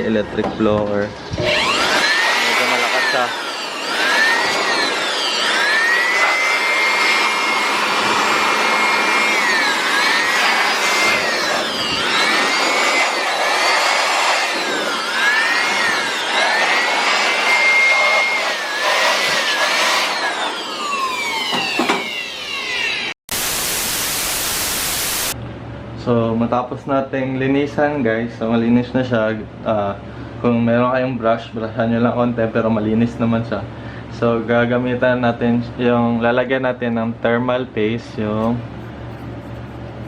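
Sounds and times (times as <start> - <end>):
electric blower motor whine: 0.8 - 25.4.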